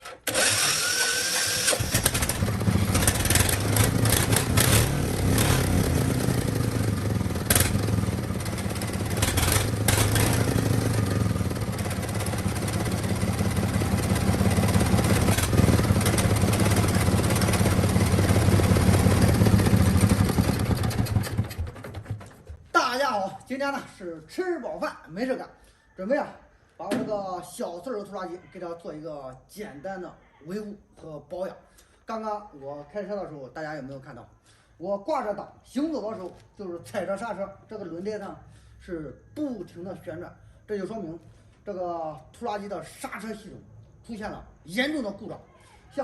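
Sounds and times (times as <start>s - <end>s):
tractor diesel engine chugging: 0.3s - 22.4s.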